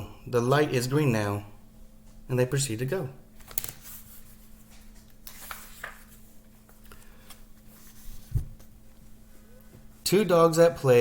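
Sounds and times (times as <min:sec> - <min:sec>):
book pages rustling and turning: 0:03.4 - 0:09.2.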